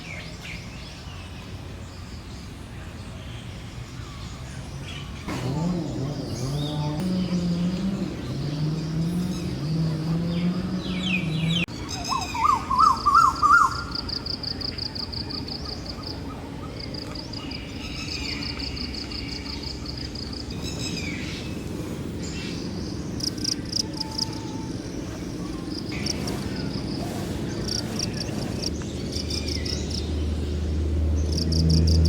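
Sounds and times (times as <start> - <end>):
bird chirps: 3.4 - 32.0
loud warbling bird call: 5.0 - 21.4.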